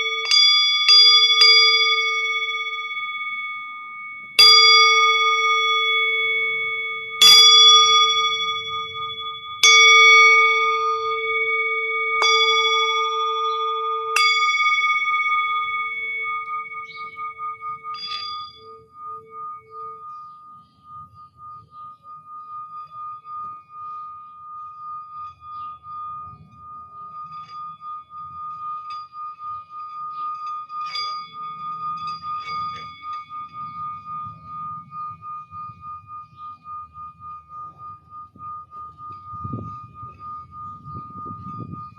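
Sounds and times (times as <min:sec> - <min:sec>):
singing bowls ringing: 0:00.0 - 0:41.9.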